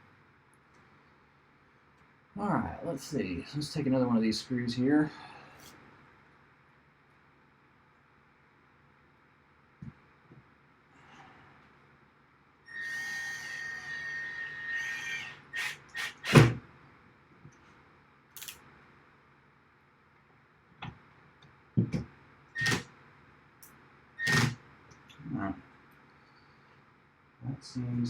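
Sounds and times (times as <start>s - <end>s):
cordless drill whining: 12.7s - 16.6s.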